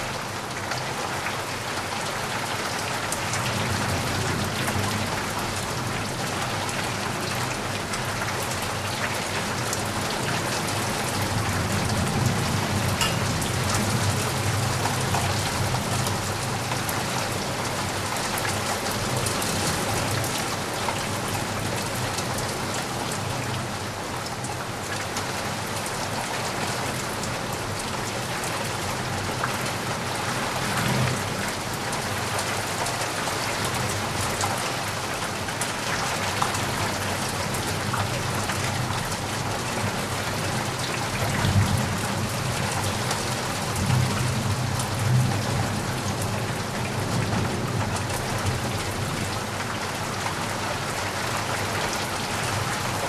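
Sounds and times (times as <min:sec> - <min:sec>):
steady rain: 0:00.0 - 0:53.0.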